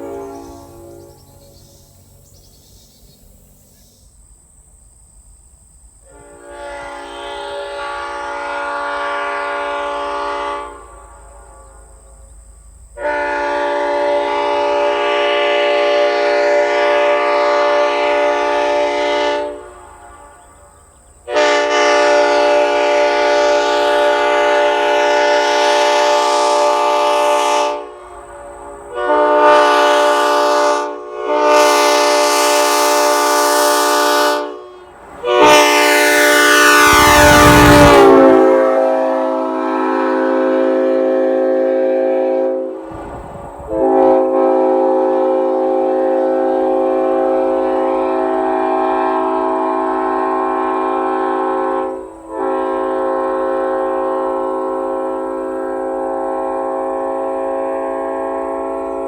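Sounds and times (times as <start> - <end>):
air train horn blasts: 0.0 - 2.0, 6.0 - 59.0.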